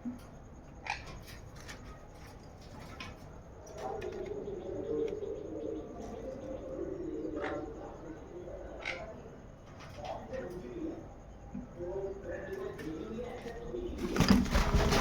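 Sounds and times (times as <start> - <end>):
bird chirp: 0.7 - 14.8
low wavering coo-like call: 3.8 - 9.5.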